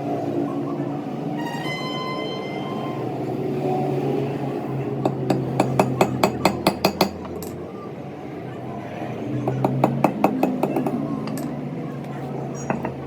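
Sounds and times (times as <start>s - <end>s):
hammer tapping metal: 5.0s - 7.6s, 9.5s - 11.5s, 12.6s - 13.0s.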